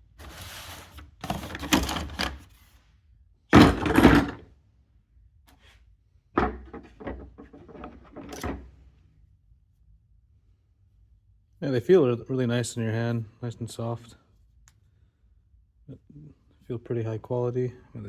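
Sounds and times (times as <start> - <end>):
scrape: 0.0 - 1.6, 2.4 - 2.9
packaging rustling and sliding: 0.1 - 2.7.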